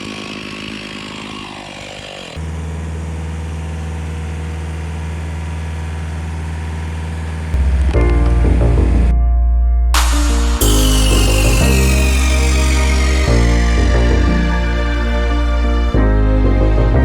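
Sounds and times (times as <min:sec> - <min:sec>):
engine idling: 0:00.0 - 0:07.6
electronic music: 0:10.0 - 0:17.0.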